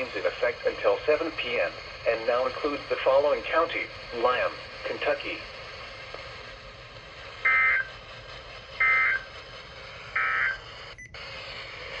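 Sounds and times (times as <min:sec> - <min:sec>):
radio hiss: 0:00.0 - 0:12.0
warbling digital data tones: 0:07.4 - 0:08.0, 0:08.8 - 0:11.2.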